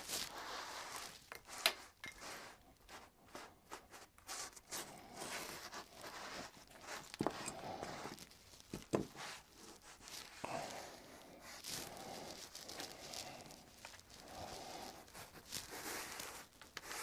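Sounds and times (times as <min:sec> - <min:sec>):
cloth rag rubbing swishes: 0:00.0 - 0:01.2.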